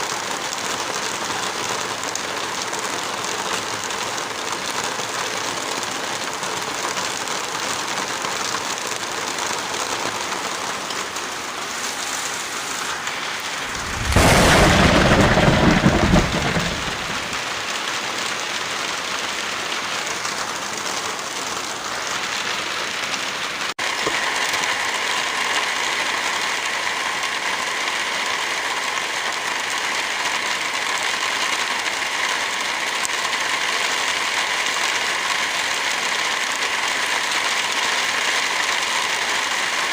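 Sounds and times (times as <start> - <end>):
steady rain falling: 0.0 - 39.9
thunder clap: 13.4 - 17.7.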